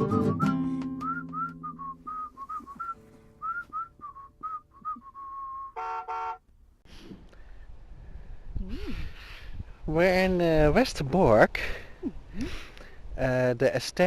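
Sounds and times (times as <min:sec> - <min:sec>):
held guitar notes: 0:00.0 - 0:05.1
whistled melody: 0:00.0 - 0:05.8.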